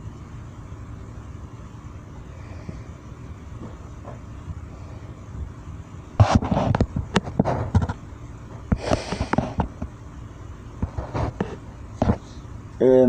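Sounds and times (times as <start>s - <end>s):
steady low hum: 0.0s - 13.0s
sharp clicks and knocks: 6.2s - 8.0s
scraping rustle: 10.8s - 12.5s.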